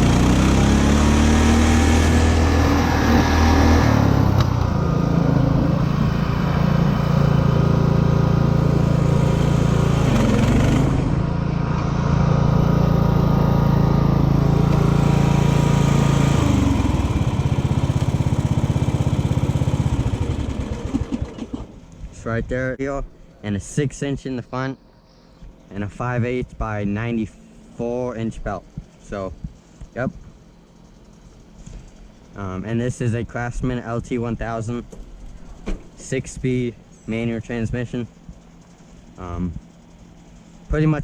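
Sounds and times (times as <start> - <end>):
lawn tractor engine running: 0.0 - 22.2, 34.9 - 41.0.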